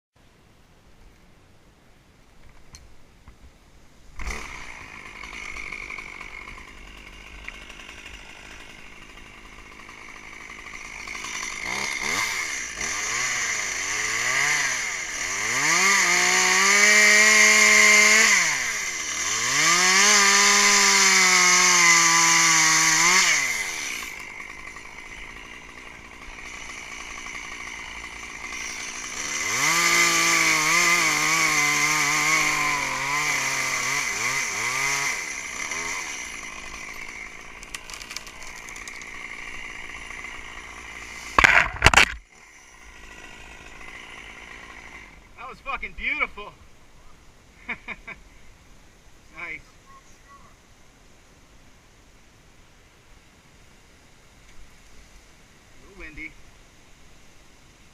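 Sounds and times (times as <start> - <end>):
chainsaw engine idling and revving: 4.2 - 46.1.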